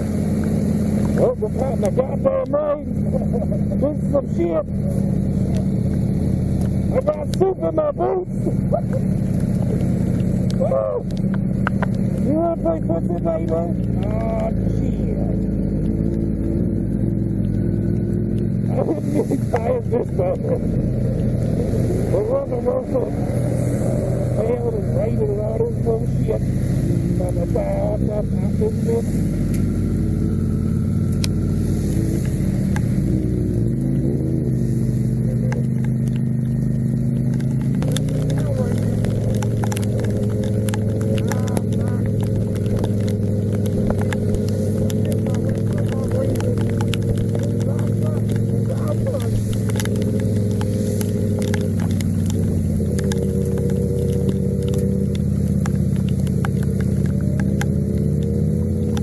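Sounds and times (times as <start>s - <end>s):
rain hissing: 0.0s - 7.6s, 8.2s - 59.0s
motorcycle engine running: 0.0s - 59.0s
wind: 0.0s - 59.0s
sharp ticks on microphone: 8.8s - 14.6s, 31.1s - 59.0s
wind hiss: 23.1s - 24.4s.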